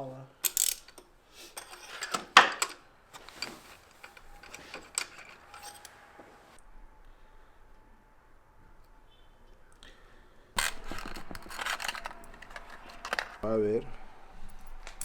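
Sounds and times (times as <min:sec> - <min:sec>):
metal tools clinking and rattling: 0:00.4 - 0:06.1, 0:10.6 - 0:13.4.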